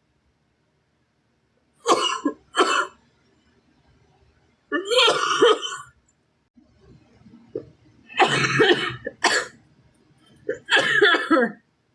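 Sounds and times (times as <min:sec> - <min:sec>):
girl coughing: 0:01.9 - 0:03.0, 0:04.8 - 0:05.9, 0:08.2 - 0:09.6, 0:10.5 - 0:11.6.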